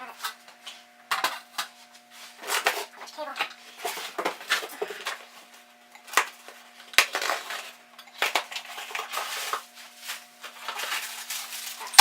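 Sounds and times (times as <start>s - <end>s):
packaging rustling: 6.1s - 12.0s.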